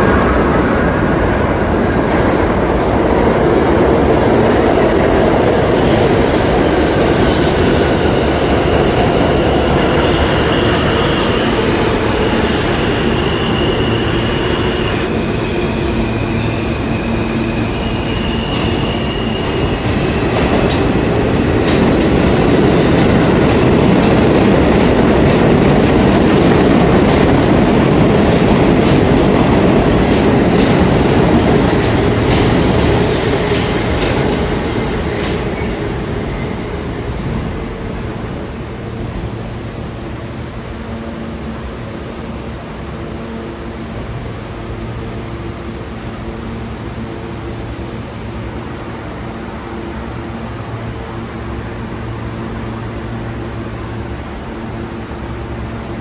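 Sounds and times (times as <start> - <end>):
subway train rumbling on rails: 0.0 - 56.0.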